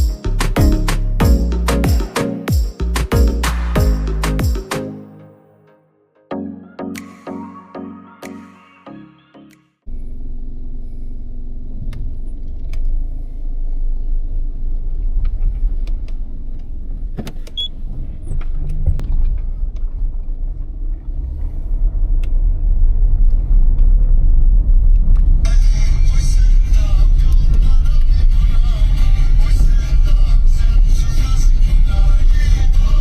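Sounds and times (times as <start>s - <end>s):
road and engine rumble inside car: 9.9s - 33.0s.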